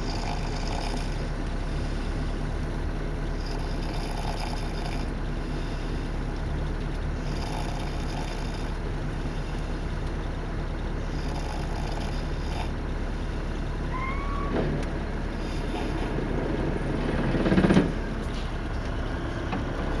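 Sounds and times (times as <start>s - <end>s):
people snoring: 0.0s - 1.4s, 3.3s - 6.0s, 7.2s - 9.9s, 11.0s - 18.2s
bus engine hum: 0.0s - 20.0s.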